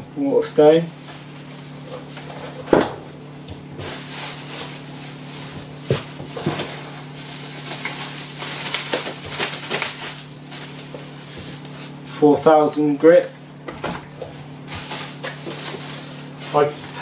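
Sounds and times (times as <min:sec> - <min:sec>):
low steady hum: 0:00.0 - 0:17.0
wrapping rustling: 0:03.6 - 0:12.0, 0:14.3 - 0:17.0.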